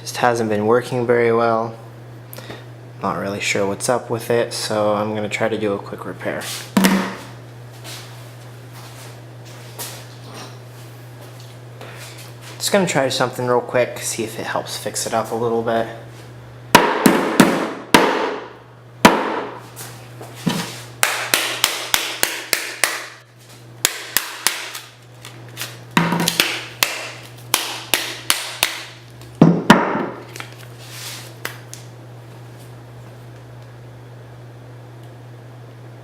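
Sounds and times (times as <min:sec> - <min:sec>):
phone being struck: 0:06.8 - 0:07.2.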